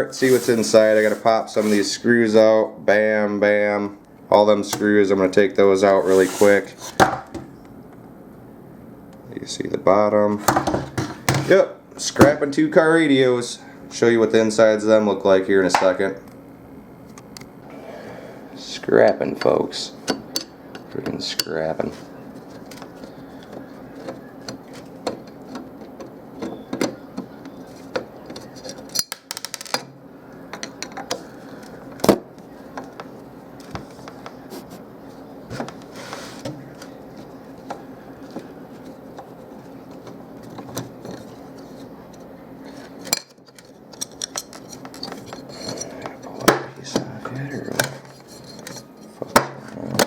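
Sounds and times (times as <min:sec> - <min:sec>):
steady low hum: 0:00.0 - 0:50.0.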